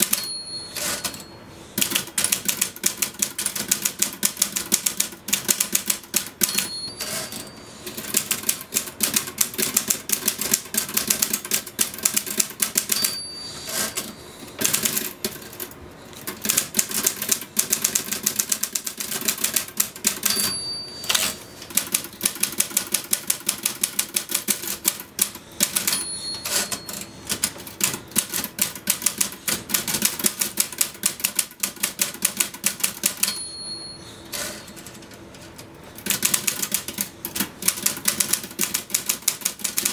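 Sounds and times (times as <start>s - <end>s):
typewriter margin bell ding: 0.0s - 1.4s, 6.2s - 8.0s, 12.7s - 14.2s, 20.1s - 21.9s, 25.6s - 27.5s, 33.0s - 34.9s
typewriter keys clattering: 1.8s - 33.4s, 34.3s - 39.9s.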